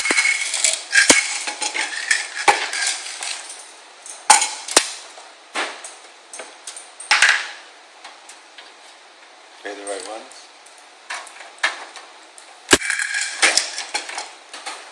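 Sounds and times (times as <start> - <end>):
small metal screws clinking: 0.0 - 4.6, 12.8 - 14.2.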